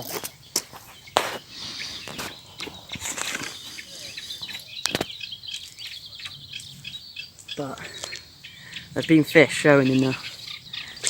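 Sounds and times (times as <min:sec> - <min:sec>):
birds chirping faintly: 0:00.0 - 0:11.0.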